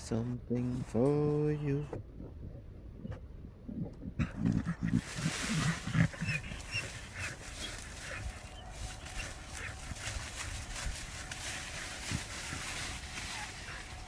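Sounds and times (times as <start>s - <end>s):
dogs scratching and digging: 4.7s - 14.0s.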